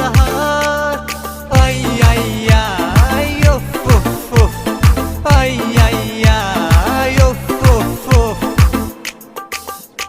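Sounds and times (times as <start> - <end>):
song with heavy beat: 0.0 - 10.0
synth stabs: 1.7 - 7.1.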